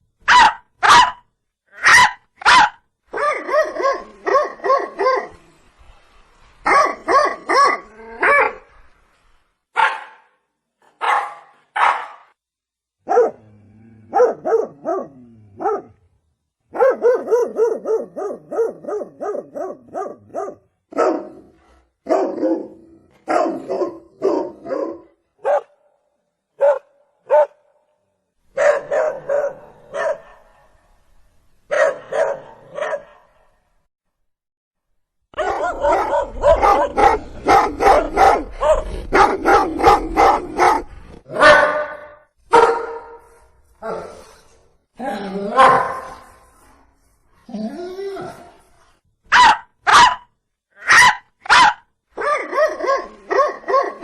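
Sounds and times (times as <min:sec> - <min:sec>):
dog barking: 0:00.2 - 0:05.4, 0:06.6 - 0:08.6, 0:09.7 - 0:10.4, 0:11.0 - 0:12.4, 0:13.0 - 0:13.5, 0:14.1 - 0:16.0, 0:16.7 - 0:25.8, 0:26.6 - 0:27.7, 0:28.6 - 0:30.8, 0:31.7 - 0:33.4, 0:35.4 - 0:43.3, 0:45.6 - 0:46.2, 0:49.3 - 0:54.0.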